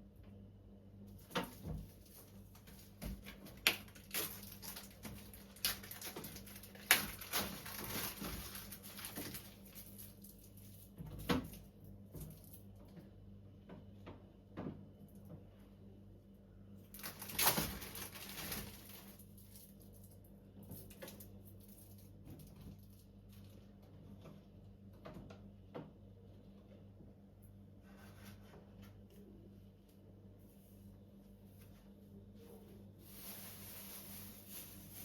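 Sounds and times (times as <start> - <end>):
faint low hum: 0.0 - 35.0
food packaging being handled: 1.2 - 12.7, 16.9 - 23.6, 33.0 - 35.0.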